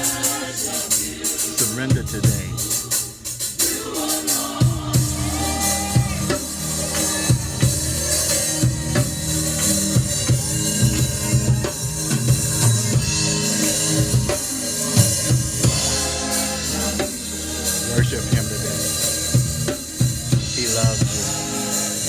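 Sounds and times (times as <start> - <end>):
drum kit beat: 0.0 - 22.0
gospel worship music: 0.0 - 22.0.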